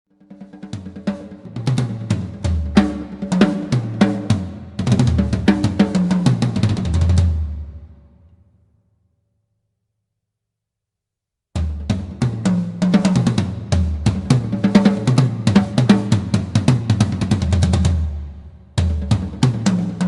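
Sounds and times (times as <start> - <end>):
drum kit run of strokes: 0.2 - 7.9, 11.6 - 20.0.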